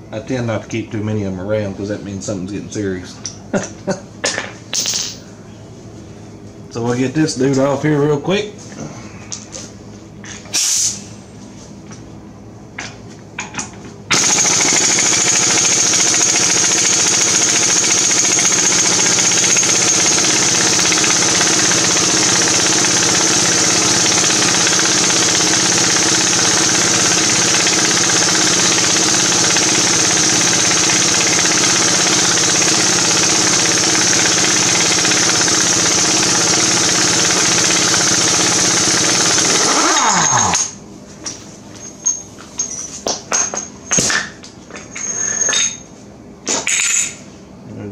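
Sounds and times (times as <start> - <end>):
impact wrench hammering: 14.1 - 40.7
motor winding down whine: 14.1 - 40.8.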